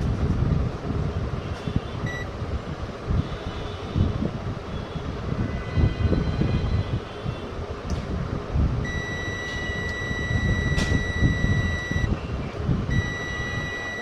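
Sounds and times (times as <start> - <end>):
low background rumble: 0.0 - 3.3, 7.8 - 14.0
multimeter continuity beep: 2.0 - 2.3, 8.8 - 12.2, 12.9 - 14.0.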